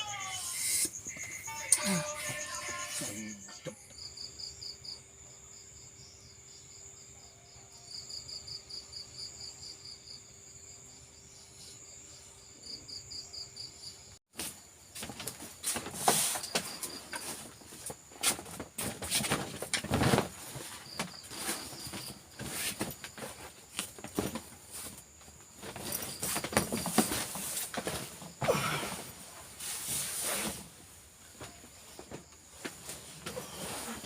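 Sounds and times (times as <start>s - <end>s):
insects chirping and buzzing: 0.0s - 34.0s
rustling crackling and knocking: 14.4s - 28.4s.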